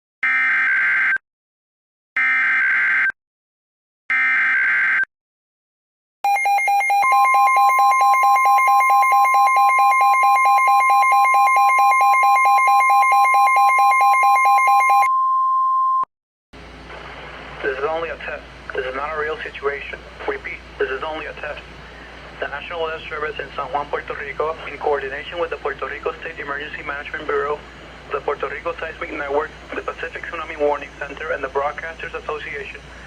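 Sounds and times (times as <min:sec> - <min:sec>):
two-tone alarm: 0:00.2 - 0:01.2, 0:02.2 - 0:03.2, 0:04.1 - 0:05.1, 0:06.2 - 0:15.2.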